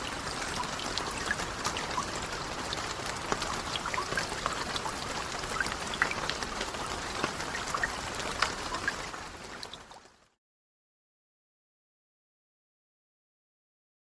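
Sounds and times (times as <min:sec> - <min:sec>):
raindrops pattering: 0:00.0 - 0:10.4
steady rain falling: 0:00.0 - 0:10.4.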